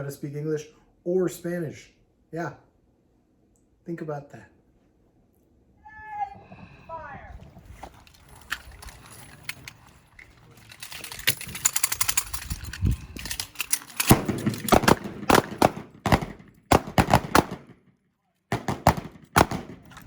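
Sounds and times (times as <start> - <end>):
handgun shots: 14.0 - 17.7, 18.5 - 20.0.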